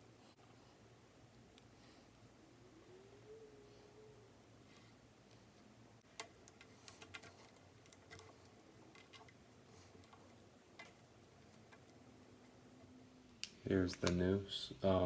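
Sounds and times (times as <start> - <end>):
small clicks and taps of parts: 6.0 - 12.6.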